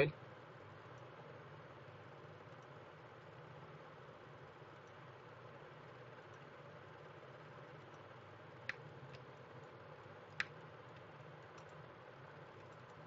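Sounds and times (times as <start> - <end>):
low background hum: 0.0 - 13.0
computer mouse clicks: 4.8 - 5.1, 6.2 - 6.5, 7.8 - 13.0.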